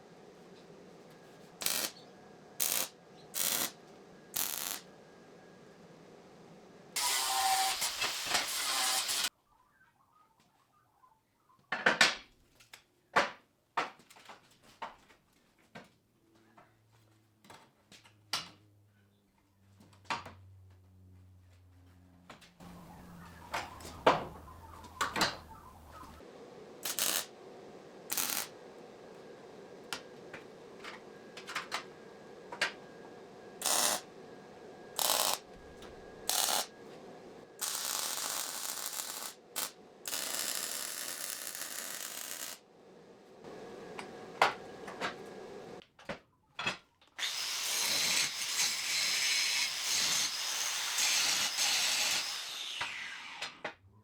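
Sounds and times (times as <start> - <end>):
power tool cutting steel: 1.6 - 2.0, 2.6 - 3.8, 4.4 - 4.9, 7.0 - 9.3, 26.8 - 27.3, 28.1 - 28.6, 33.6 - 34.1, 34.9 - 36.8, 37.6 - 42.6, 47.2 - 53.6.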